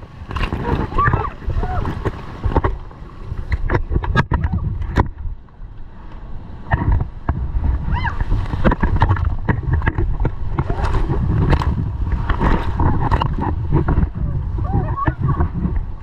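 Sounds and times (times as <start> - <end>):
rushing splashing water: 0.0 - 5.2, 6.6 - 16.0
low rumble: 0.0 - 16.0.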